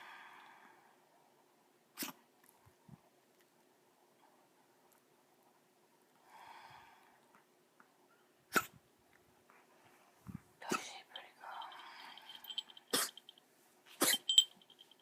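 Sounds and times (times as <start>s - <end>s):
soft breathy sound: 6.1s - 7.5s, 9.5s - 13.3s
dog coughing: 12.9s - 13.2s, 14.0s - 14.3s.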